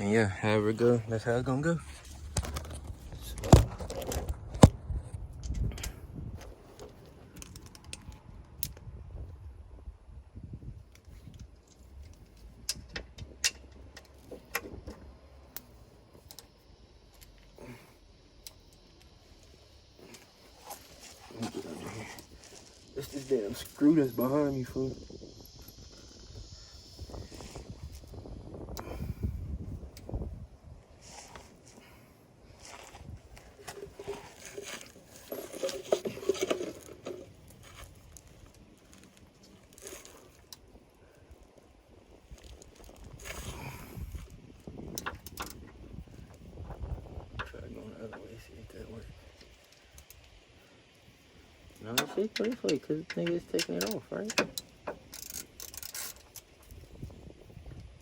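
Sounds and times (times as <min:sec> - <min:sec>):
socket wrench clinking on metal: 0:51.9 - 0:56.4.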